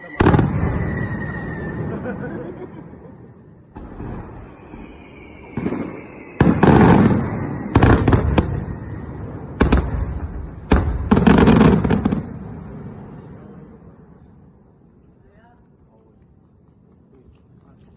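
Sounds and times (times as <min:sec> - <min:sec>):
fireworks bangs with rumbling echo: 0:00.0 - 0:02.6, 0:03.7 - 0:14.3.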